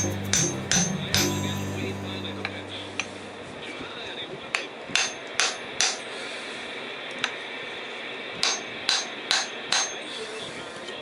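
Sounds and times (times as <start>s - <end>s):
hammer blows on metal: 0.0s - 3.4s.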